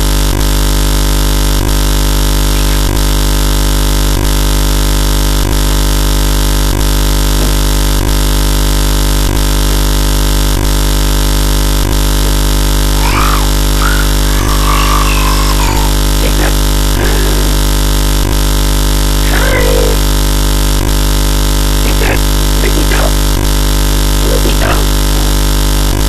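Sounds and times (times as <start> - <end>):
loud electrical hum and buzz: 0.0 - 26.0
faint voices: 13.0 - 17.7, 19.2 - 20.1.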